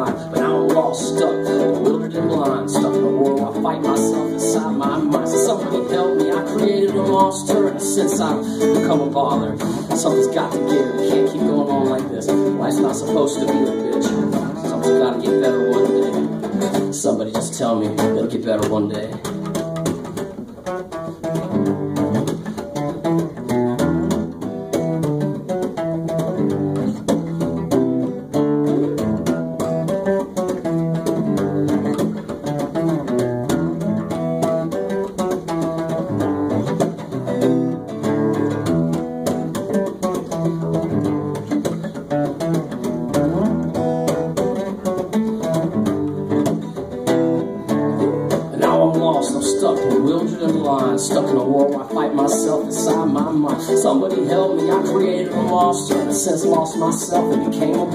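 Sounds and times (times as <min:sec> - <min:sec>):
person singing: 0:00.0 - 0:19.5, 0:46.4 - 0:57.9
rhythmic guitar accompaniment: 0:00.0 - 0:57.9.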